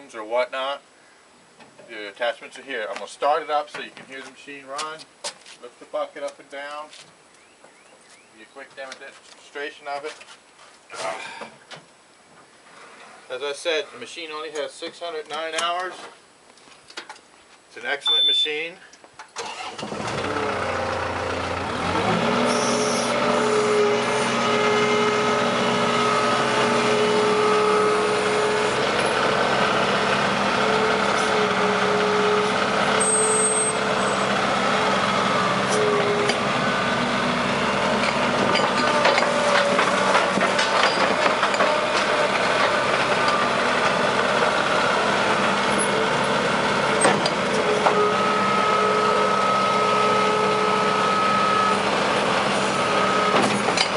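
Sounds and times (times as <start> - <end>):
diesel engine starting and running: 19.4 - 53.9.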